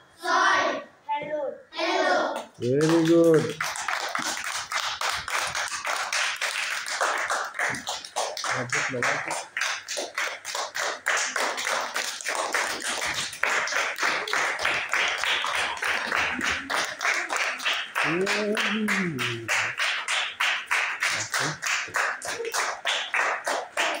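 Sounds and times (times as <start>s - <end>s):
group clapping fast: 2.4s - 24.0s
person calling out: 18.0s - 19.5s.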